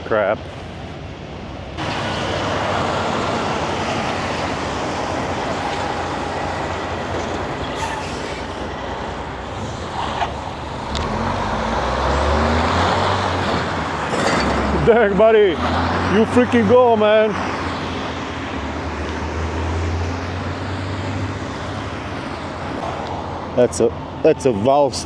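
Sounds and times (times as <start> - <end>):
truck engine and road rumble: 0.0 - 25.0.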